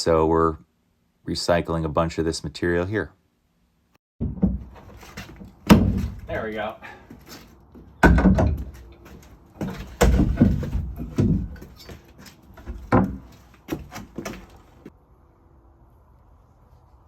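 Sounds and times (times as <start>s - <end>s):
knocks and thumps: 4.2s - 6.3s, 7.8s - 14.9s.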